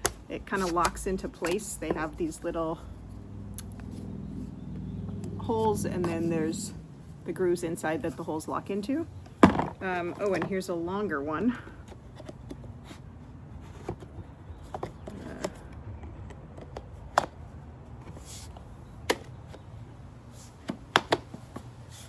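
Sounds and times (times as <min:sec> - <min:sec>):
hard plastic parts clicking: 0:13.7 - 0:17.5, 0:18.1 - 0:19.7, 0:20.6 - 0:21.7.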